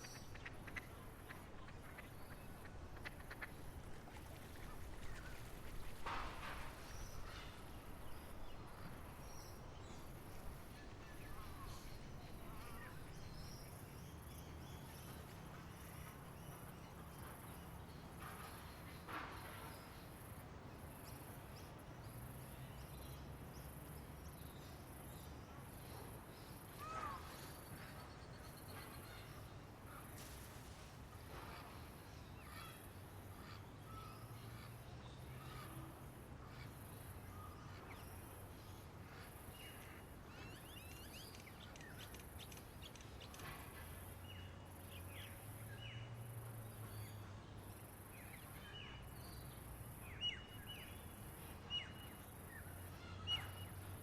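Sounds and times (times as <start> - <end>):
bird calls: 0.0 - 15.2.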